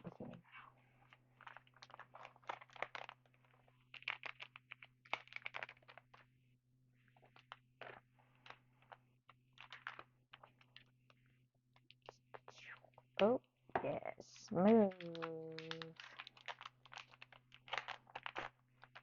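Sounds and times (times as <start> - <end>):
cards and foil wrapper crinkling: 1.0 - 6.3, 7.0 - 11.2, 14.3 - 19.0.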